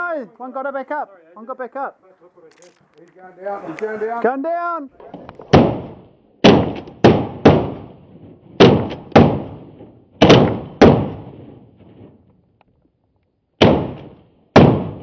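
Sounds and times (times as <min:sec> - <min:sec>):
shotgun blasts with echo: 0:05.5 - 0:11.6, 0:13.6 - 0:15.0.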